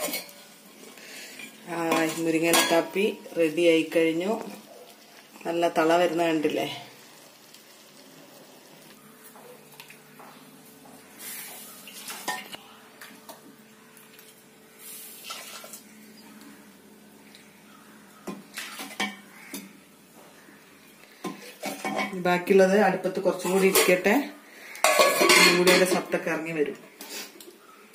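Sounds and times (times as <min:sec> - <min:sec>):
utensils clinking against clay pot: 0:00.0 - 0:00.4, 0:01.3 - 0:03.0, 0:18.3 - 0:19.7, 0:21.2 - 0:22.2, 0:23.4 - 0:24.1, 0:24.8 - 0:26.1.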